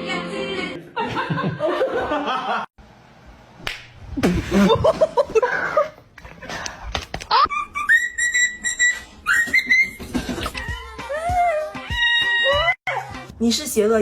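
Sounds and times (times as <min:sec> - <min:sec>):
high whistling: 0:07.8 - 0:10.1.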